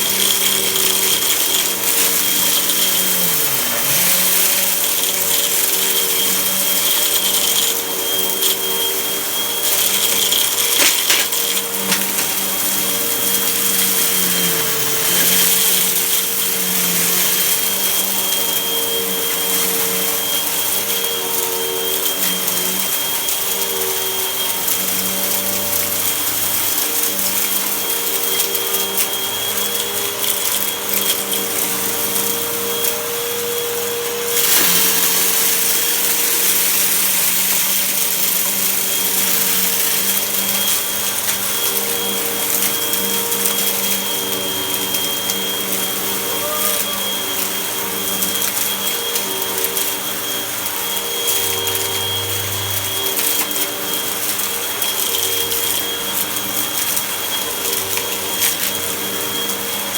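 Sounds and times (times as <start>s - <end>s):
vacuum cleaner whining: 0.0s - 59.9s.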